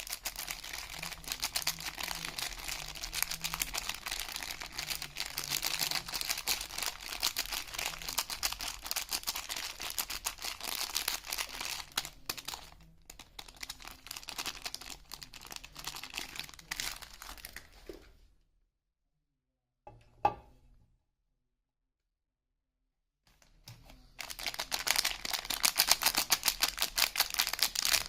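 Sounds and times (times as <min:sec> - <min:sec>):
packaging crinkling and tearing: 0:00.0 - 0:17.8, 0:24.1 - 0:28.0.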